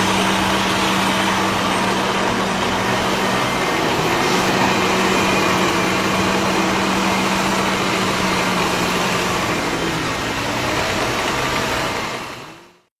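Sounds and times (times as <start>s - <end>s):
engine running steadily: 0.0s - 12.9s.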